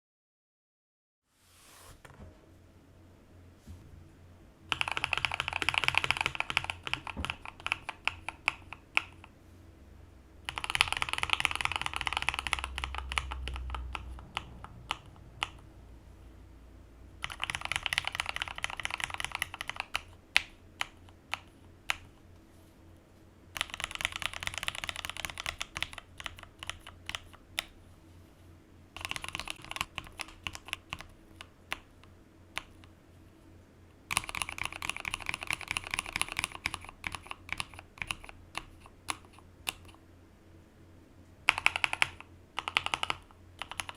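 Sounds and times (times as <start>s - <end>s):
mechanical keyboard typing: 4.7s - 9.4s, 10.4s - 15.7s, 17.2s - 22.2s, 23.5s - 27.7s, 29.0s - 32.9s, 34.1s - 40.0s, 41.4s - 43.9s.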